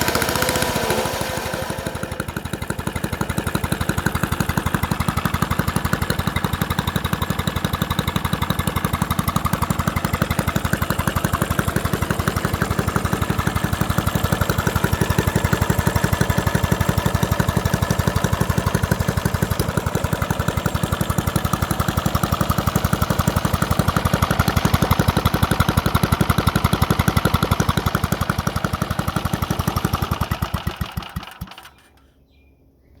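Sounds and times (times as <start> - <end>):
lawnmower engine running: 0.0 - 32.1.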